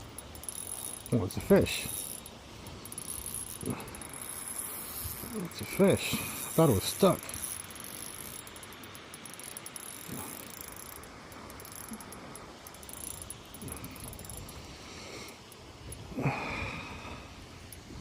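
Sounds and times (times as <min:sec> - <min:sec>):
fishing reel gears clicking: 0:00.0 - 0:16.1, 0:17.4 - 0:18.0.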